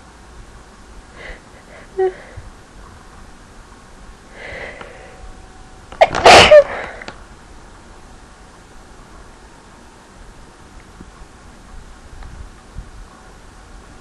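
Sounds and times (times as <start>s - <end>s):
breathy inhale: 4.3s - 5.3s
person sneezing: 6.0s - 7.1s.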